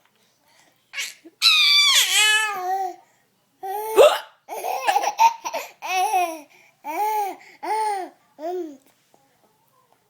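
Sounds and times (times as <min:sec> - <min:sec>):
woman hiccuping: 0:04.0 - 0:04.4.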